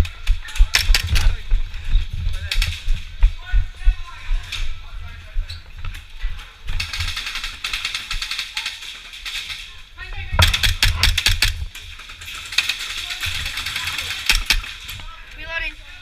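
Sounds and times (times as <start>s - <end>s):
airsoft guns firing rapid bursts: 6.8s - 9.5s, 10.4s - 14.8s.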